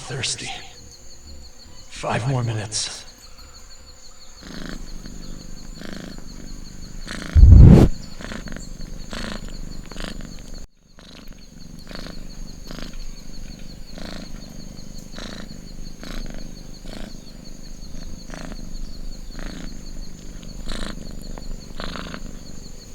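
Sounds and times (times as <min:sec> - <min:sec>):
cat purring: 0:04.4 - 0:22.9
loud low boom: 0:07.4 - 0:07.9
steady high whine: 0:07.4 - 0:07.9.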